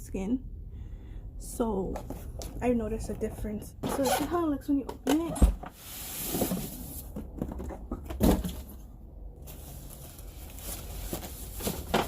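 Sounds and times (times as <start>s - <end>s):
plastic rustling: 9.4s - 12.0s.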